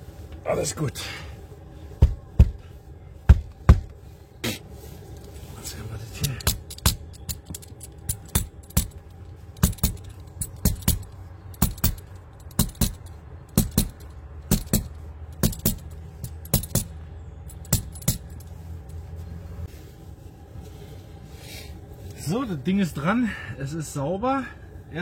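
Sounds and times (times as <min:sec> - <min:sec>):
steady low hum: 0:00.0 - 0:25.0
sharp metallic taps: 0:06.2 - 0:18.5.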